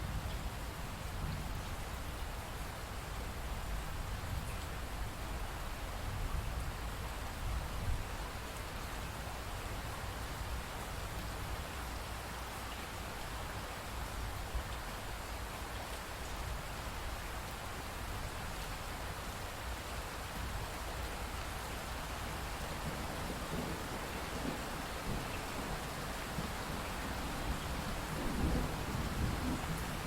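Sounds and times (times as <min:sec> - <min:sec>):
steady rainfall: 0:00.0 - 0:30.0
low rumble of thunder: 0:22.8 - 0:30.0.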